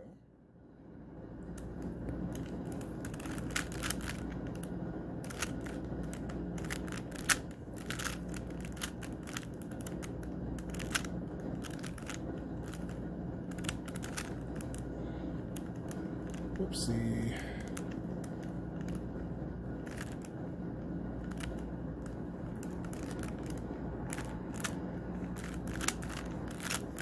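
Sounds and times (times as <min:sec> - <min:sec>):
low hum: 0:00.0 - 0:27.0
puzzle cube plastic clicks: 0:01.5 - 0:16.6, 0:17.6 - 0:19.1, 0:19.8 - 0:20.3, 0:21.2 - 0:27.0.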